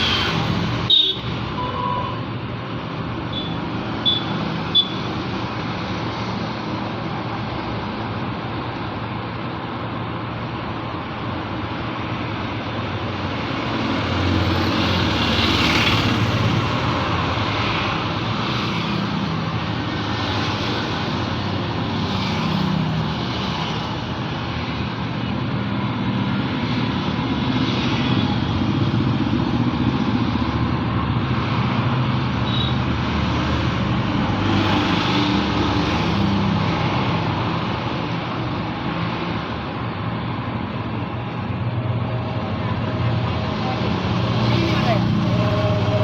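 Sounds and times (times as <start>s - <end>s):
road traffic: 0.0s - 46.0s
vehicles passing: 0.0s - 46.0s
motorcycles: 11.3s - 46.0s.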